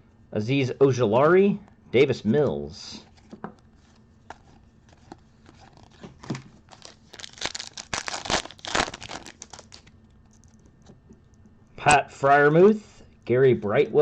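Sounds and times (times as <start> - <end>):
wrapper crinkling and tearing: 3.9 - 10.6.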